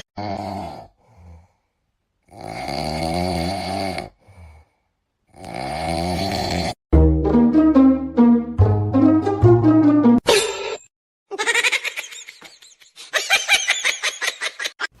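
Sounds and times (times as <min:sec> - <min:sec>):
person snoring: 0:00.2 - 0:01.6, 0:02.3 - 0:06.8.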